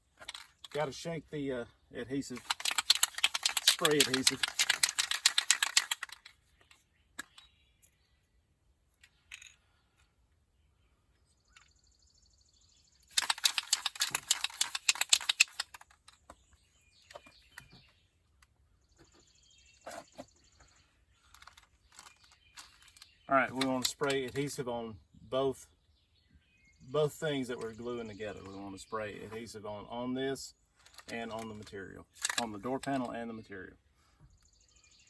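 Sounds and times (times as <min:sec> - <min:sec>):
handling clicks and knocks: 0:00.0 - 0:00.9, 0:02.2 - 0:08.0, 0:13.0 - 0:20.6, 0:21.2 - 0:24.6, 0:30.8 - 0:33.2
aerosol can ball rattling: 0:02.4 - 0:06.3, 0:13.1 - 0:16.0.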